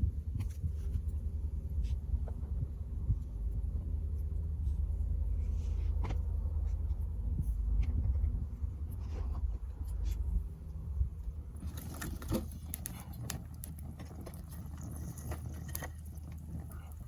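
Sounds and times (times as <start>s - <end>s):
low steady rumble: 0.0s - 17.0s
wood fire crackling: 8.4s - 17.0s
sharp fire pops: 11.6s - 17.0s.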